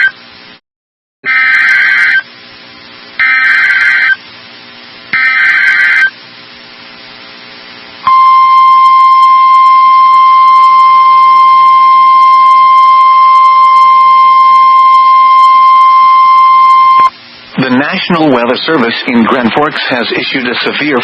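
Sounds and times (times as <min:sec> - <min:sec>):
steady warning tone: 0:08.1 - 0:17.1.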